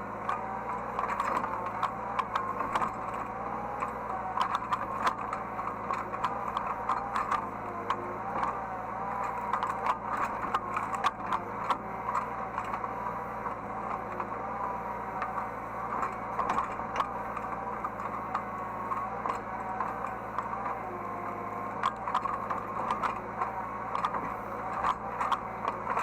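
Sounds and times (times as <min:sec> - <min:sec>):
diesel engine running: 0:00.0 - 0:26.0
clicks and rattles: 0:21.7 - 0:26.0.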